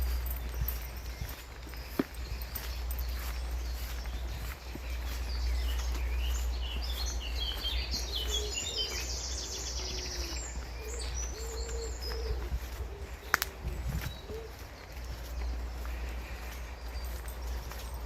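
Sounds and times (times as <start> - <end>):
songbirds chirping: 0.0 - 18.0
pigeon cooing: 9.8 - 14.6.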